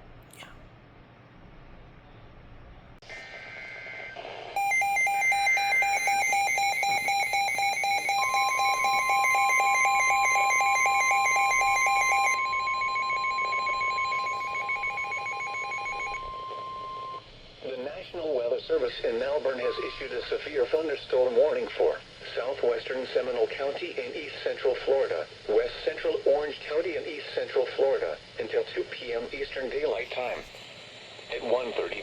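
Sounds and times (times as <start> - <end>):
rapid electronic alarm beeping: 4.6 - 17.3
steady warning alarm tone: 4.6 - 18.2.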